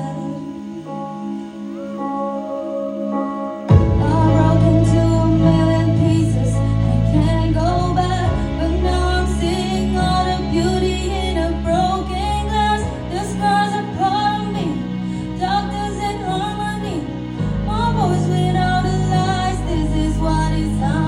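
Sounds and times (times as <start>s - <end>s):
music with singing: 0.0s - 21.0s.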